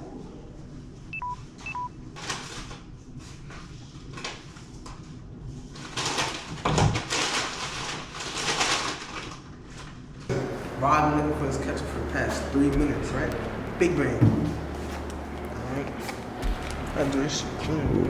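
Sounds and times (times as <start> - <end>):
short electronic beeps: 1.2 - 1.9
rummaging through cupboards: 10.3 - 18.0
heavy thud: 14.0 - 14.8.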